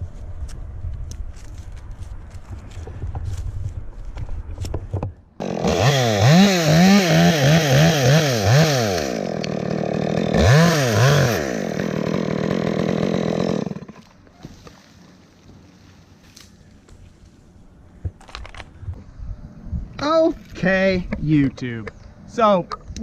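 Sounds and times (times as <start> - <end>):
chainsaw revving: 5.4 - 15.0.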